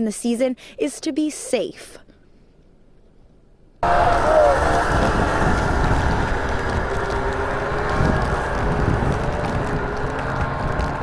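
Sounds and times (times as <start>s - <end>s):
snowmobile engine running: 3.8s - 11.0s.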